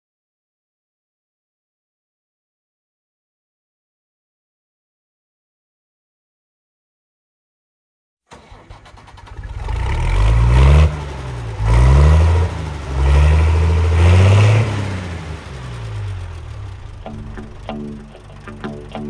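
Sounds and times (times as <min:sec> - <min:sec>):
engine starting and revving: 0:08.3 - 0:18.5.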